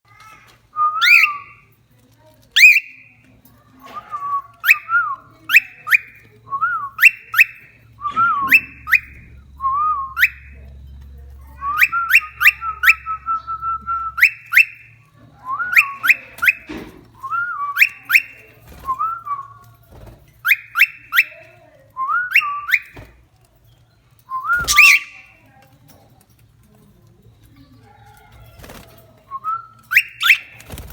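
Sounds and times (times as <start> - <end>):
cockatiel whistling a tune: 0.8 - 1.6, 2.6 - 3.0, 3.9 - 10.5, 11.6 - 19.5, 20.4 - 21.4, 22.0 - 23.1, 24.3 - 25.3, 29.3 - 30.6.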